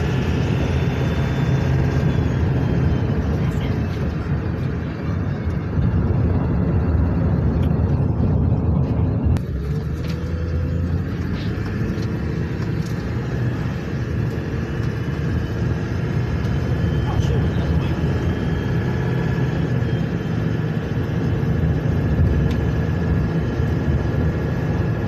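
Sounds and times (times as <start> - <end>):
faint turbo whistle: 0.0 - 3.8
diesel engine deep rumble: 0.0 - 25.0.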